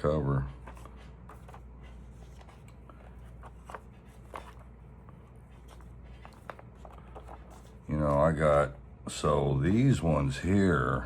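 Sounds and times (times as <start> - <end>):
paper rustling: 0.5 - 8.7.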